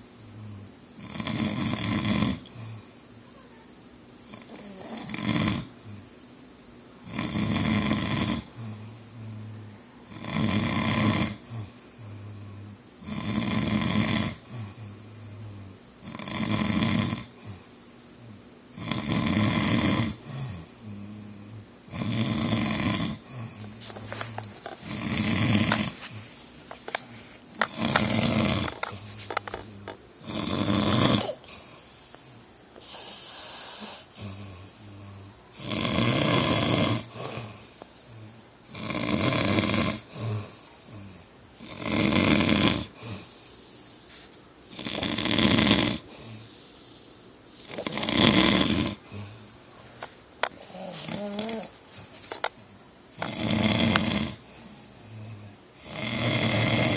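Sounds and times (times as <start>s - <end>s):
man snoring loudly: 0.4s - 2.8s, 4.3s - 6.0s, 7.0s - 9.3s, 10.1s - 11.7s, 13.0s - 14.8s, 16.0s - 17.6s, 18.8s - 21.2s, 21.9s - 26.2s, 27.5s - 31.6s, 32.8s - 37.7s, 38.7s - 43.3s, 44.7s - 46.5s, 47.6s - 49.4s, 53.2s - 56.9s.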